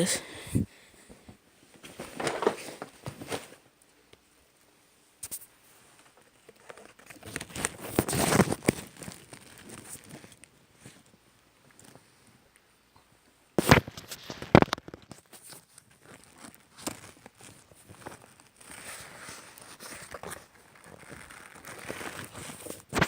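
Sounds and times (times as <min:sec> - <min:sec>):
fabric rustling: 0:01.1 - 0:03.7.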